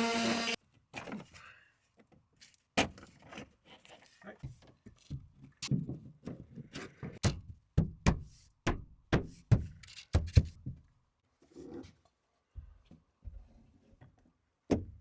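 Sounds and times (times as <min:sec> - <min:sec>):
sharp knocks and thuds: 0:07.2 - 0:10.8.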